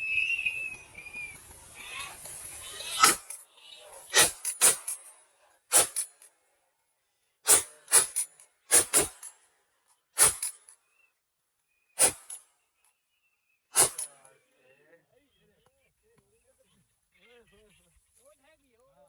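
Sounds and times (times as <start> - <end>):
shotgun shots: 5.7 - 6.0, 13.8 - 14.2.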